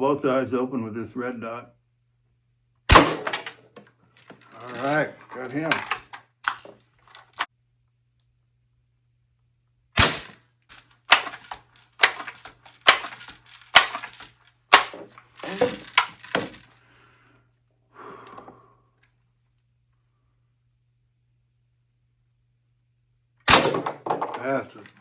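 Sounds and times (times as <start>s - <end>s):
air rifle mechanical clacks: 2.9s - 7.5s, 10.0s - 16.8s.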